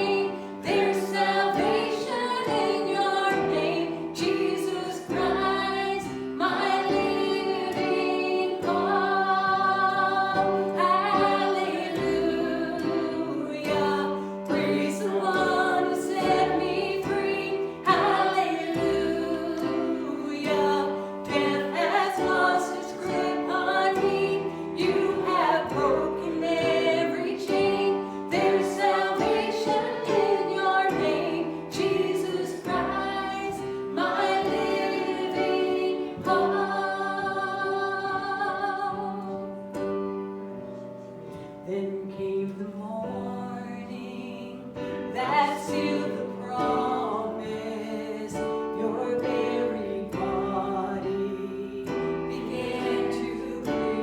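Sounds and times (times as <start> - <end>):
voices singing worship song: 0.0 - 54.0.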